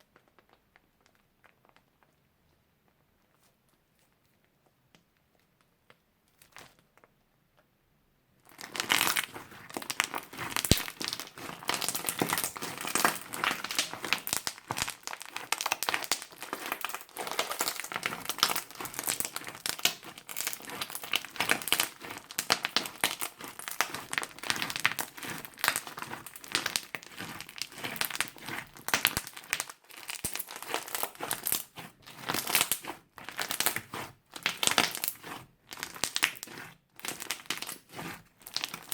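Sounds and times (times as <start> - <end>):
crunchy slime crackling: 8.4 - 38.9.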